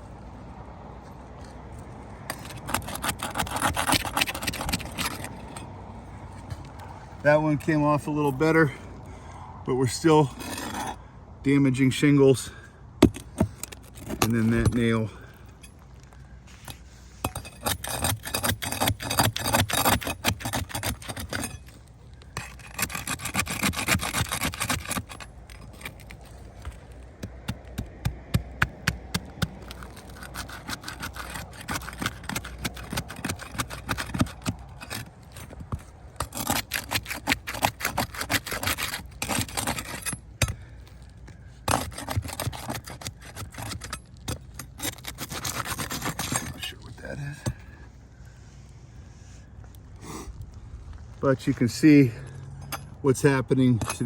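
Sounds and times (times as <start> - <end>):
hand tool scraping roof shingles: 2.3 - 5.7, 13.0 - 15.4, 16.5 - 47.8.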